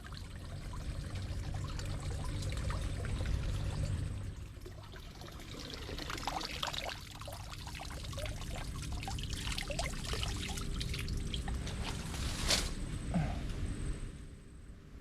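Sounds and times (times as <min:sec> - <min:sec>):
water trickling and splashing: 0:00.0 - 0:12.0
low rumble: 0:00.4 - 0:04.8.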